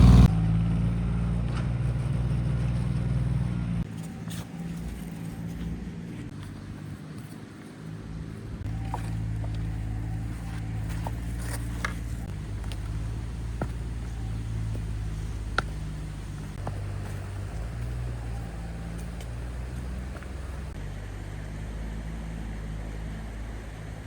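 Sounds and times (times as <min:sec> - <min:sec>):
machine engine running: 0:00.0 - 0:03.8, 0:12.0 - 0:20.8.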